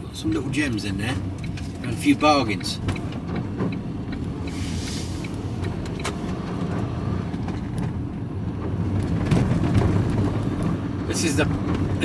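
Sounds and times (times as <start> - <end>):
vehicle engine and road rumble: 0.0 - 12.0
brief hiss: 4.5 - 5.3.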